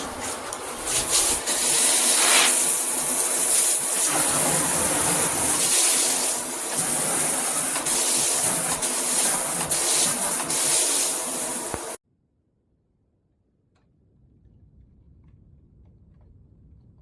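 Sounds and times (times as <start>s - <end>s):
water spraying from shower head: 0.0s - 12.0s.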